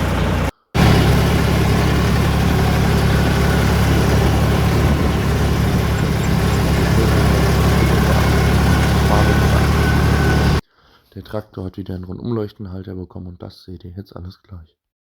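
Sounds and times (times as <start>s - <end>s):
tractor engine running: 0.0s - 10.6s.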